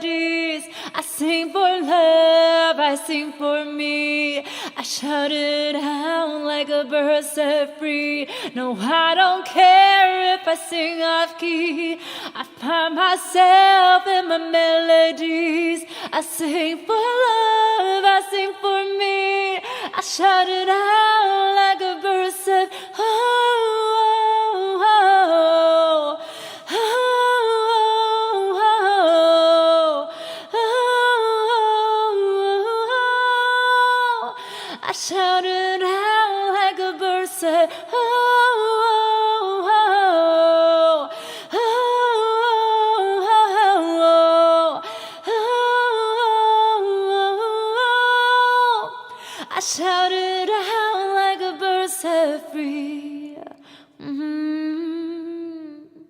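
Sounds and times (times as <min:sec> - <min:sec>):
woman singing unaccompanied: 0:00.0 - 0:56.0
woman breathing: 0:04.4 - 0:04.8, 0:08.3 - 0:08.6, 0:12.0 - 0:12.4, 0:19.6 - 0:20.0, 0:26.2 - 0:26.7, 0:30.1 - 0:30.5, 0:34.4 - 0:34.8, 0:41.1 - 0:41.5, 0:44.8 - 0:45.3, 0:49.1 - 0:49.5, 0:53.6 - 0:54.0.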